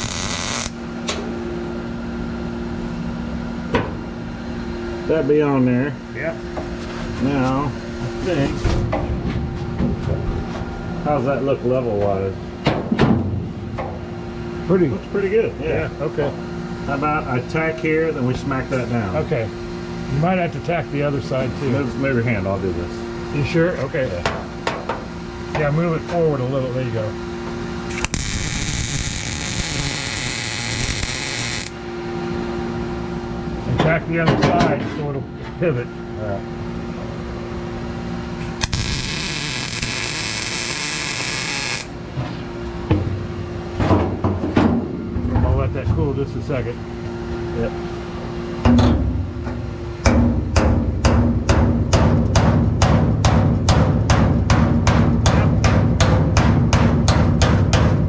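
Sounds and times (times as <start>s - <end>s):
welding arc crackling: 0.0s - 0.8s, 27.9s - 31.8s, 38.6s - 42.0s
low hum: 20.6s - 33.8s, 35.1s - 51.8s.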